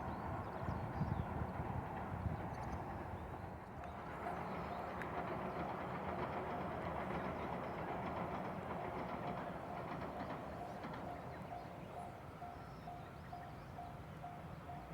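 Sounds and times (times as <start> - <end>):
train running: 0.2 - 14.9
level crossing warning bell: 10.6 - 14.9.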